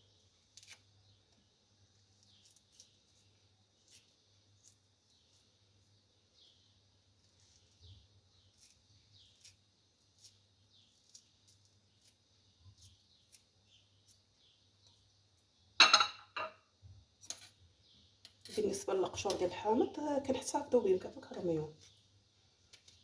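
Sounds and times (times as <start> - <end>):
knife scraping lemon peel: 0.4 - 0.9, 1.9 - 5.7, 7.2 - 15.0
knocks on worktop: 15.8 - 16.5.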